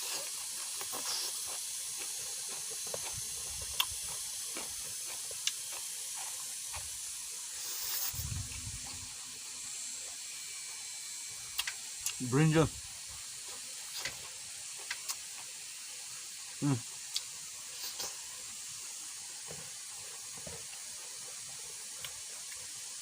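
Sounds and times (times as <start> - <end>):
steady high hiss: 0.0 - 23.0
chewing clicks: 0.7 - 6.8, 11.6 - 12.2, 13.9 - 15.5, 17.1 - 17.3
soft low rumble: 8.1 - 9.2.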